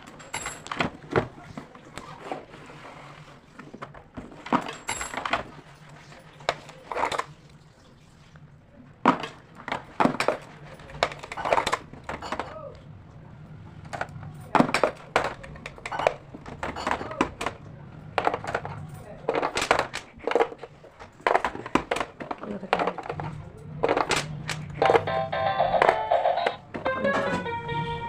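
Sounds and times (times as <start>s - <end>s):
rustling scrapes: 1.4s - 4.4s.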